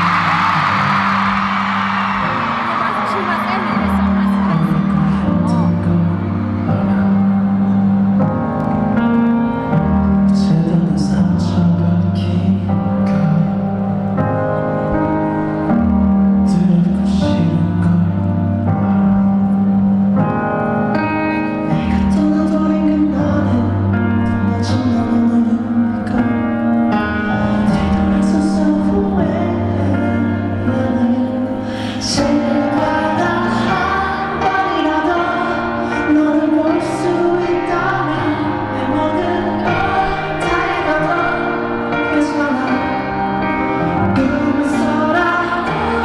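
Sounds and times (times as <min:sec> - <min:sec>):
person singing: 0:00.0 - 0:08.3, 0:21.3 - 0:46.0.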